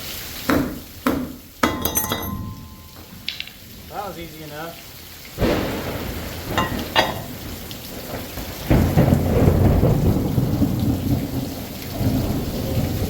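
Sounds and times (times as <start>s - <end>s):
heavy rain falling: 0.0s - 13.0s
thunder clap and rumble: 5.1s - 13.0s.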